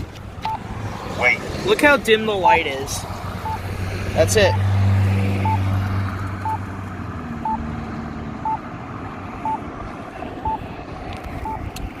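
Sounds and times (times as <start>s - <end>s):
passing vehicle engine hum: 0.0s - 12.0s
street traffic: 0.0s - 12.0s
pedestrian signal beeps: 5.4s - 5.7s, 7.4s - 7.7s, 8.4s - 8.6s, 9.4s - 9.6s, 10.4s - 10.6s, 11.4s - 11.7s.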